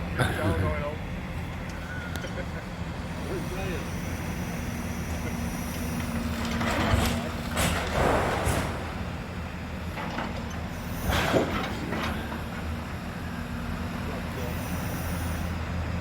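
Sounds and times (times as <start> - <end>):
demolition machinery engine hum: 0.0 - 16.0
masonry crashing and scraping: 6.3 - 9.4.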